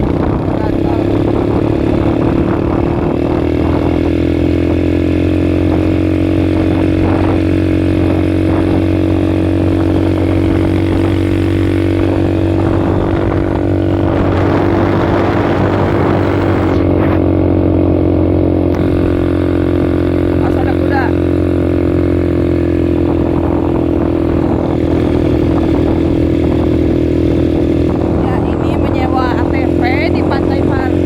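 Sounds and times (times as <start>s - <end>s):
atv engine running: 0.0s - 31.0s
rushing noise: 10.3s - 17.2s.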